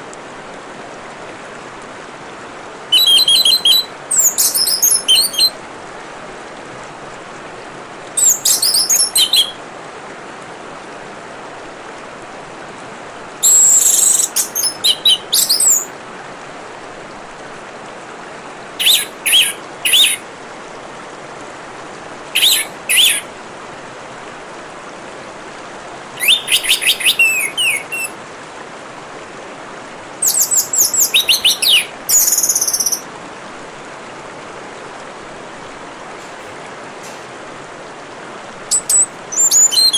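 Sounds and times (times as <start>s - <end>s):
trickling water: 2.8s - 5.6s, 8.1s - 9.6s, 25.6s - 28.2s, 30.2s - 33.0s.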